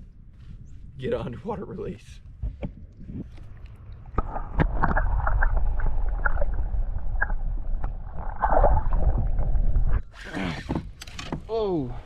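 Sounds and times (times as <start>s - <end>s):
underwater rumble of moving water: 3.0s - 10.2s
bubbling clicks and pops: 3.2s - 10.0s.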